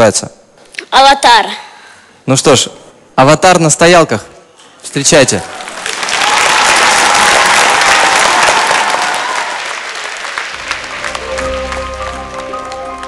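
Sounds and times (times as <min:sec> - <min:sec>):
audience applauding: 0:05.5 - 0:13.0
music with steady notes: 0:10.6 - 0:13.0.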